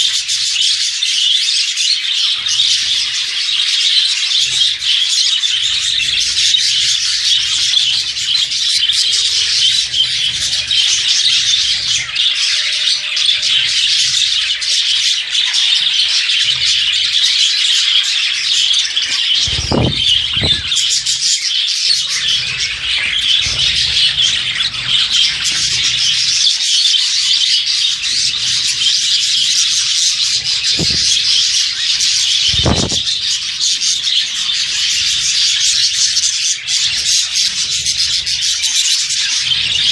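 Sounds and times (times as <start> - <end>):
budgerigars chirping: 0.0 - 39.9.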